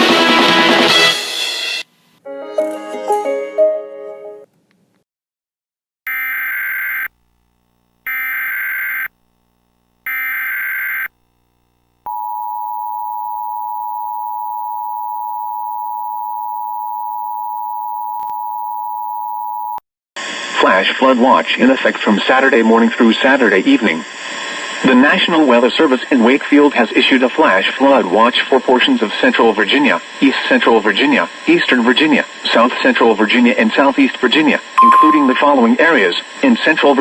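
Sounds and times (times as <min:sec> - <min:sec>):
music: 0:00.0 - 0:04.5
two-tone attention signal: 0:34.8 - 0:35.8.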